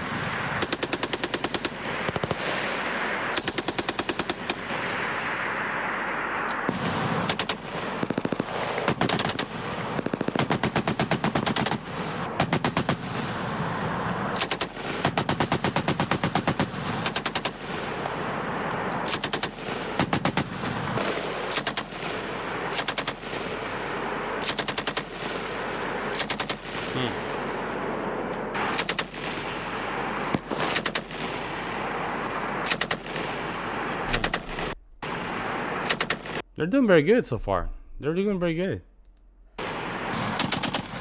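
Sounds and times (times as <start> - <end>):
machine gun bursts: 0.6 - 2.5, 3.3 - 4.8, 6.6 - 13.1, 14.4 - 18.0, 18.9 - 23.6, 24.4 - 25.2, 26.1 - 27.1, 28.6 - 29.5, 30.3 - 31.6, 32.6 - 36.4, 39.6 - 41.0.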